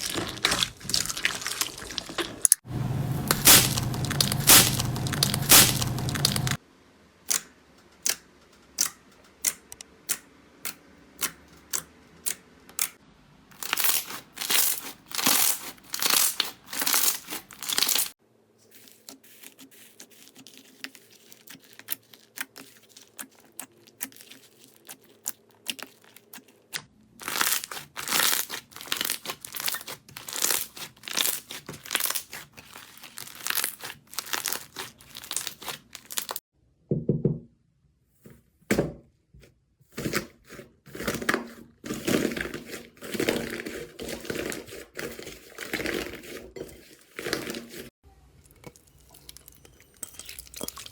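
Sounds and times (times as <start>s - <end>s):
slime squished by hand: 0.0s - 6.6s, 21.4s - 36.4s.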